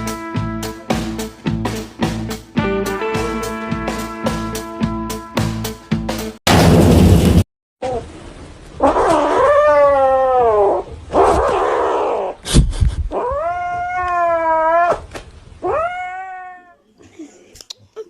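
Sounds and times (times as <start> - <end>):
cat meowing: 15.6 - 16.8.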